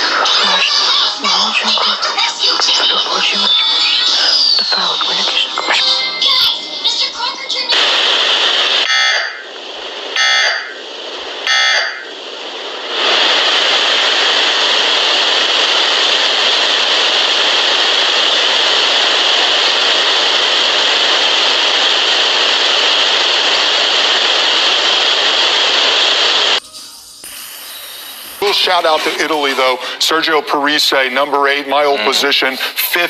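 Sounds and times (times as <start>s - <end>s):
loud steady static: 0.0s - 33.0s
digital data bursts: 0.4s - 7.2s, 8.8s - 9.5s, 10.2s - 10.8s, 11.4s - 12.1s
low hiss: 20.4s - 33.0s.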